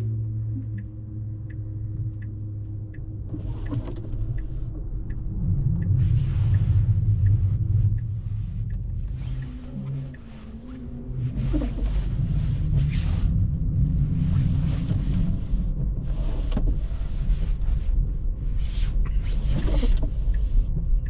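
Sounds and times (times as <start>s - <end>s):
faint light tick: 0.0s - 12.4s, 19.5s - 21.0s
tyre and road noise rumble: 0.0s - 21.0s.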